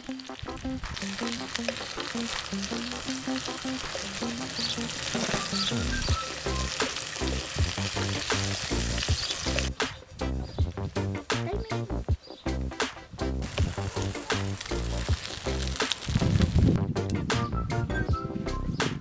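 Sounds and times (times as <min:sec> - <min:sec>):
food sizzling: 0:00.0 - 0:12.4, 0:13.2 - 0:16.8
background music: 0:00.0 - 0:19.0
heavy bass beat: 0:05.9 - 0:17.4.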